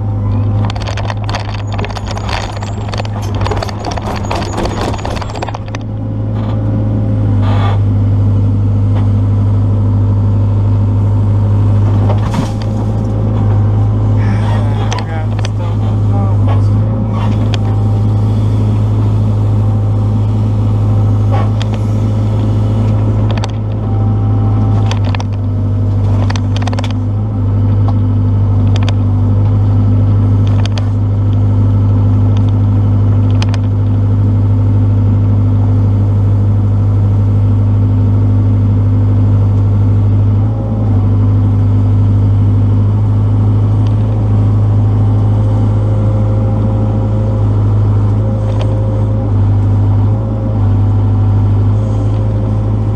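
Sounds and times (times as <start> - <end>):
excavator diesel engine running: 0.0 - 52.9
sharp metal knocks and clanks: 0.6 - 6.0.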